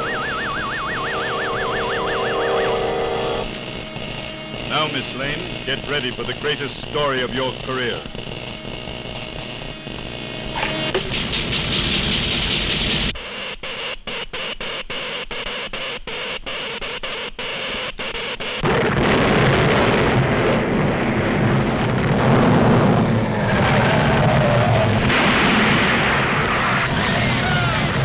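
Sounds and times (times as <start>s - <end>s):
stuttering electric crackle: 0.0s - 14.8s
loud electric hiss: 4.6s - 8.0s
loud low earthquake rumble: 18.6s - 28.0s.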